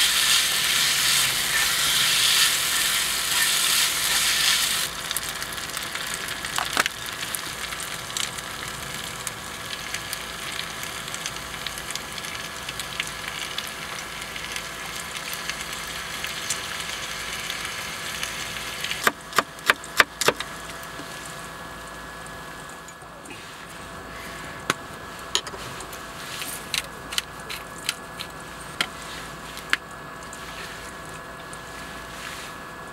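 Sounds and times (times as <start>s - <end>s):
food sizzling in a pan: 0.0s - 19.0s.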